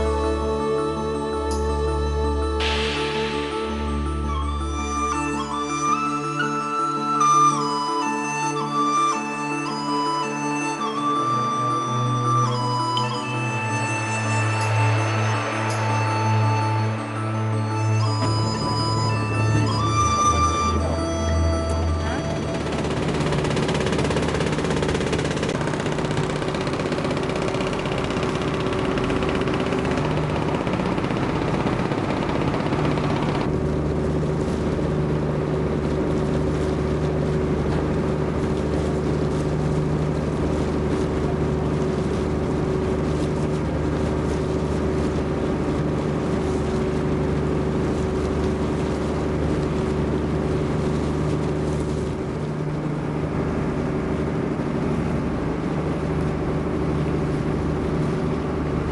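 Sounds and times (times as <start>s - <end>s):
boat engine droning: 0.0s - 58.9s
rushing hiss: 2.6s - 4.5s.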